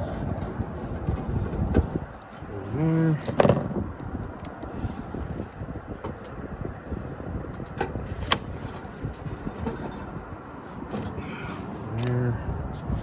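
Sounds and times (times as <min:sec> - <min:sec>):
low rumbling: 0:00.0 - 0:13.0.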